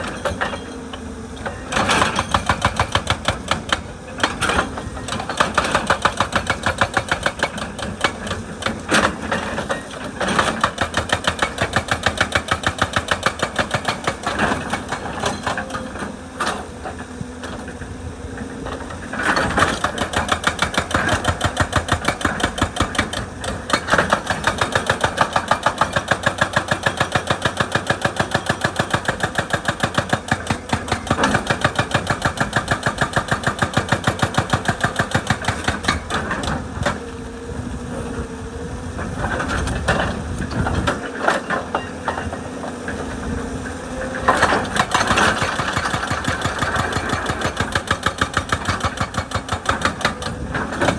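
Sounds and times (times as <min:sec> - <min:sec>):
diesel engine running: 0:00.0 - 0:50.9
hydraulic breaker hammering rock: 0:00.0 - 0:50.9.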